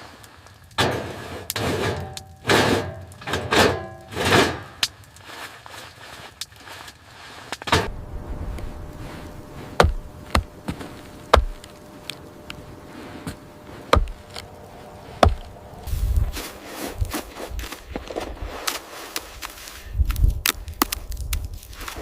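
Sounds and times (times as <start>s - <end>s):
low rumbling noise: 7.7s - 18.6s, 19.2s - 22.0s
sharp knocks on wood: 11.4s - 11.6s, 13.9s - 14.2s.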